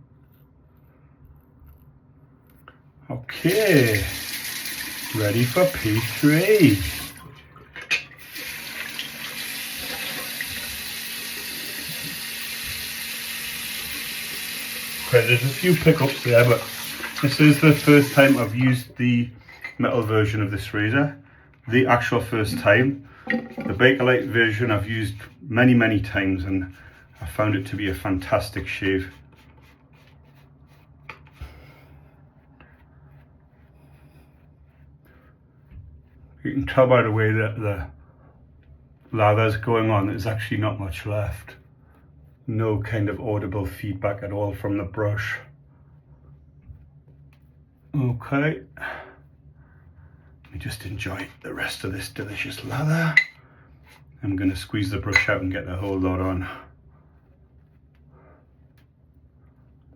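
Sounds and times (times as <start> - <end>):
shaving brush rubbing strokes: 3.4 - 7.0, 8.3 - 18.9, 21.9 - 36.3
tap running into a sink: 22.4 - 23.9.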